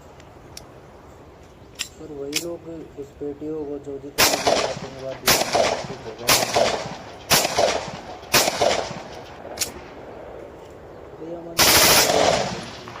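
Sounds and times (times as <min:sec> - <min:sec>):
gunfire blast: 0:04.2 - 0:10.0, 0:11.6 - 0:13.0
pistol shots: 0:04.2 - 0:10.0, 0:11.6 - 0:13.0.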